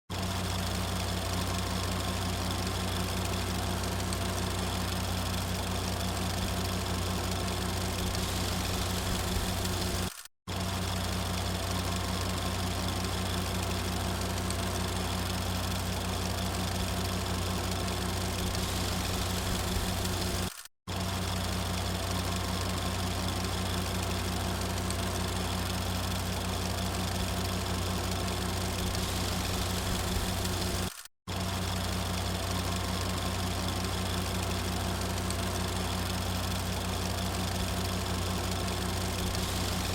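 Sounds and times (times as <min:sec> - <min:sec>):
film projector running: 0:00.1 - 0:39.9
constant hiss: 0:39.2 - 0:39.9.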